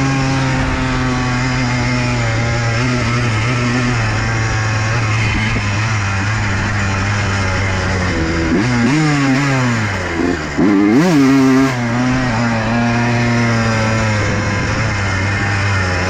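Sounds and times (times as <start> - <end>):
dirt bike engine revving: 0.0 - 16.0.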